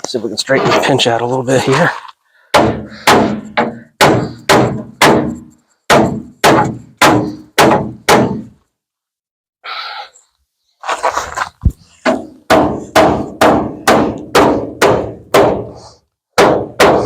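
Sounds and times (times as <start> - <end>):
hammer on sheet metal: 2.6 - 8.5, 12.1 - 15.8, 16.4 - 17.0.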